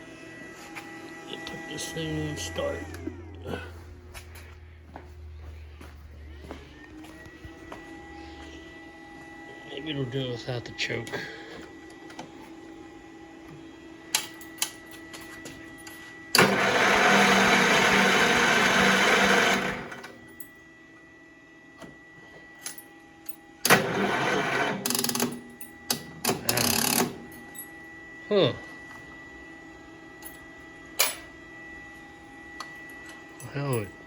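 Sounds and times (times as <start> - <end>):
engine cranked by starter: 16.4 - 20.2, 23.6 - 25.0.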